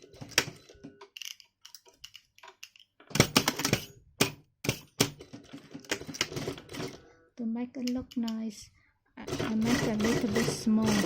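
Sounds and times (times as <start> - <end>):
tools clicking and knocking: 0.0 - 6.6, 7.8 - 8.5.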